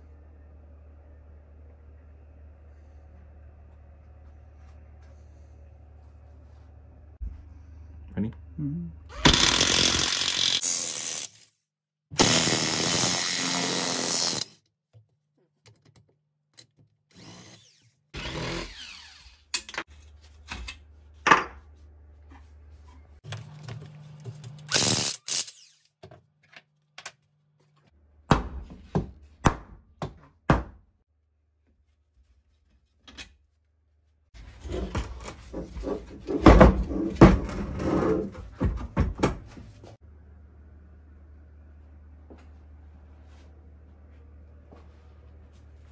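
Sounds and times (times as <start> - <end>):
power tool running: 9.2 - 11.4, 12.2 - 14.5, 17.1 - 19.5, 24.6 - 25.9.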